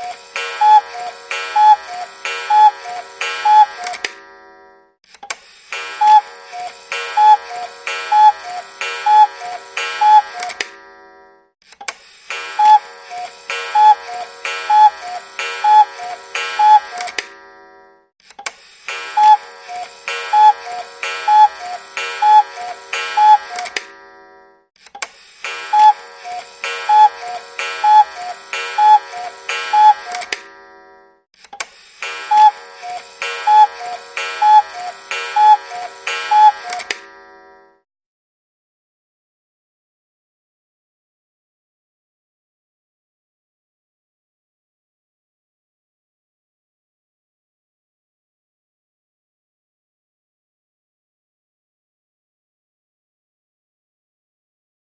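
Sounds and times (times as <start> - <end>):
cuckoo alarm clock calls: 0.0 - 4.3, 5.2 - 10.8, 11.8 - 17.2, 18.4 - 24.0, 25.0 - 30.5, 31.5 - 37.7.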